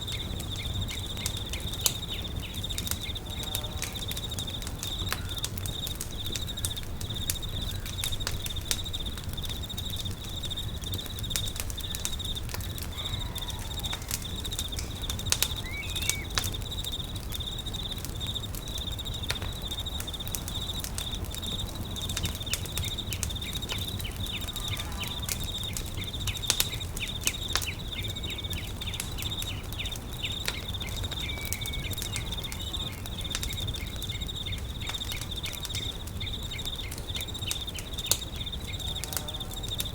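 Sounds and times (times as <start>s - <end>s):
campfire crackling and popping: 0.0s - 39.9s
pulsing insect trill: 0.0s - 39.9s
bird chirps: 13.0s - 17.8s, 22.4s - 39.0s.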